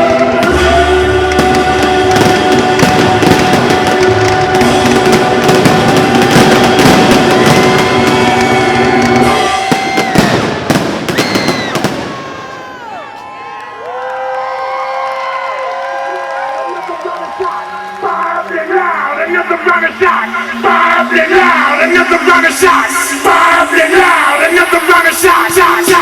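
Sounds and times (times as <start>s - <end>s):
recorded music: 0.0s - 13.0s, 16.7s - 26.0s
crowd whooping and whistling: 0.0s - 18.5s
fireworks crackling and banging: 0.0s - 26.0s.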